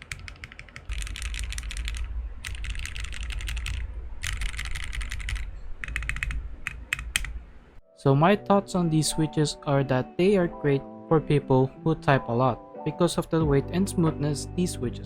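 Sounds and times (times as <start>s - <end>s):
mechanical keyboard typing: 0.0s - 7.4s.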